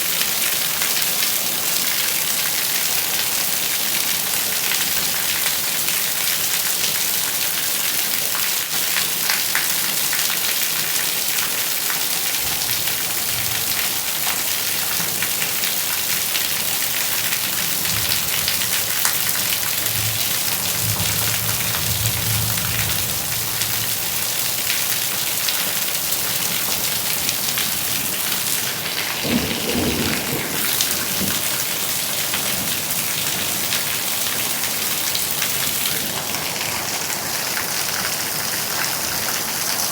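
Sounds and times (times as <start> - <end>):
steady rain falling: 0.0 - 39.9
thunder rumbling: 17.8 - 24.6, 28.9 - 33.8.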